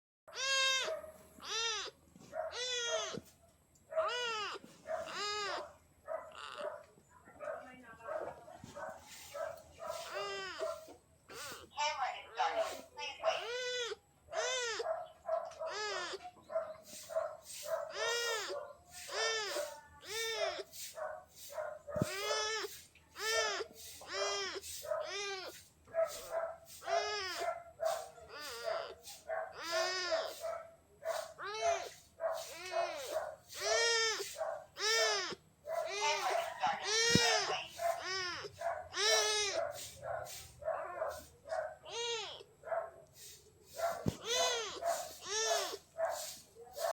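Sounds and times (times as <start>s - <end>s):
kitten meowing: 0.3s - 3.3s, 4.0s - 5.7s, 6.3s - 6.6s, 9.9s - 11.7s, 13.4s - 14.8s, 15.6s - 16.4s, 17.8s - 20.7s, 22.0s - 25.6s, 26.8s - 30.4s, 31.1s - 39.6s, 41.9s - 42.5s, 44.0s - 45.8s.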